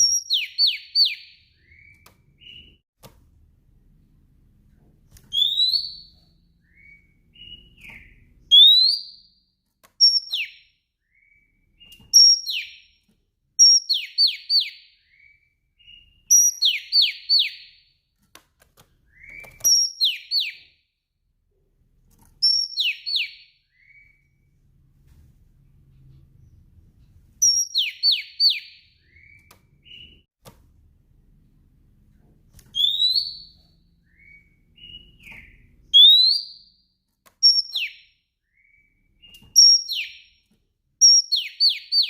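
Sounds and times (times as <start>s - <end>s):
bird whistling calls: 5.3s - 9.2s, 32.8s - 36.7s.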